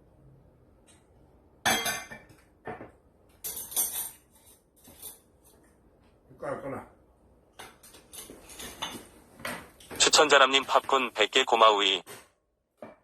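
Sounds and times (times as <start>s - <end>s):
dishes and cutlery clinking: 1.6s - 5.7s, 7.6s - 9.7s.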